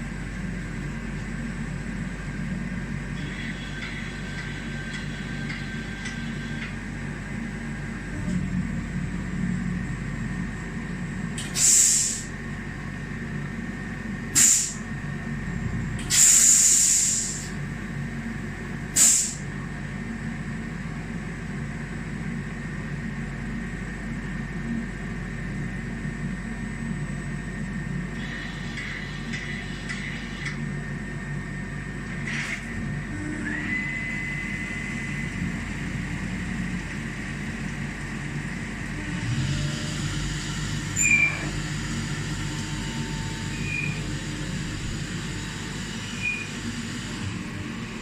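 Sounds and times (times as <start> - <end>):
loud air hisses: 11.5 - 12.3, 14.4 - 14.8, 16.0 - 17.6, 19.0 - 19.4.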